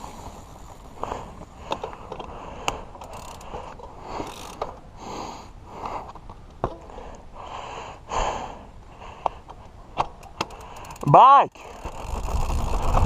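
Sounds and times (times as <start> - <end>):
person breathing hard: 1.0 - 6.2, 6.8 - 9.5.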